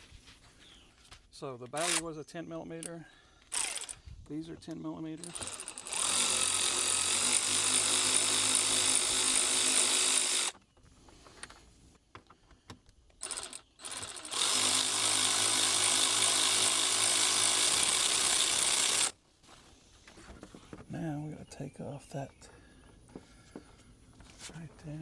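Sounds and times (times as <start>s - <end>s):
power driver whirring: 1.8s - 2.1s, 2.8s - 4.0s, 5.2s - 10.6s, 13.2s - 19.2s.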